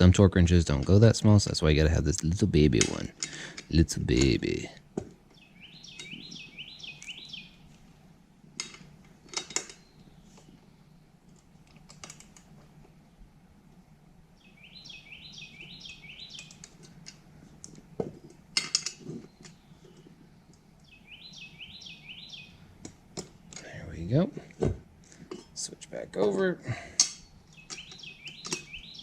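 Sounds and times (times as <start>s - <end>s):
small bird trilling chirps: 5.3s - 7.7s, 14.4s - 16.7s, 19.3s - 22.7s, 27.5s - 29.0s.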